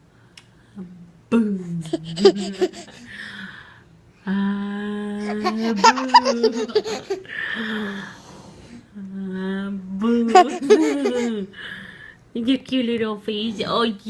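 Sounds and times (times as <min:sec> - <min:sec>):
person laughing: 0:01.8 - 0:03.0, 0:05.2 - 0:07.3, 0:10.3 - 0:11.4.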